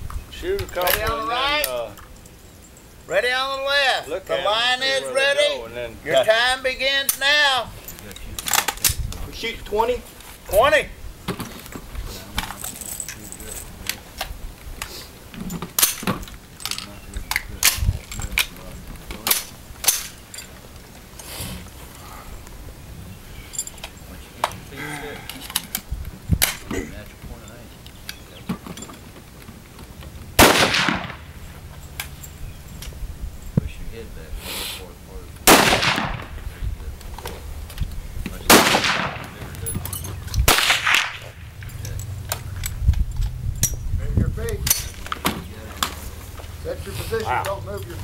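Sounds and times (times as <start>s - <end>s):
rifle shots: 30.4s - 31.3s, 35.4s - 36.4s, 38.4s - 39.4s, 40.4s - 41.6s.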